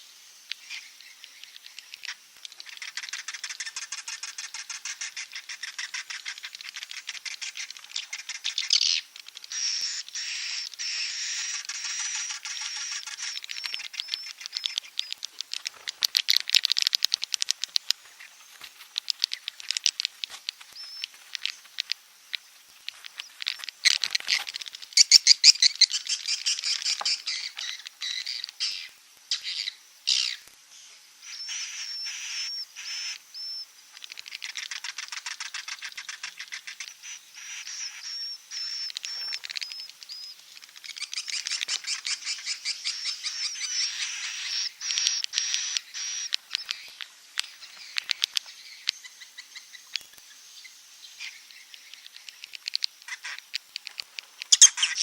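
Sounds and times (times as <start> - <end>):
swiftlet calls: 0.5 - 30.4, 54.5 - 55.0.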